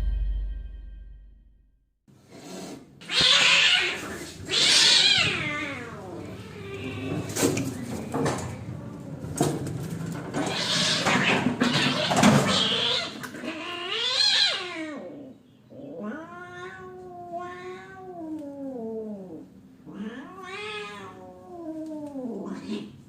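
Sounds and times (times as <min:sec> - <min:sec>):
cats hissing and spitting: 0:02.2 - 0:08.6, 0:09.2 - 0:23.0
cats yowling: 0:03.0 - 0:09.5, 0:10.2 - 0:23.0.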